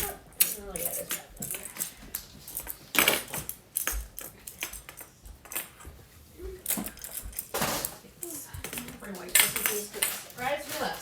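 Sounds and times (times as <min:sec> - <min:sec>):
magnetic blocks clacking: 0:00.0 - 0:05.9, 0:06.6 - 0:07.6.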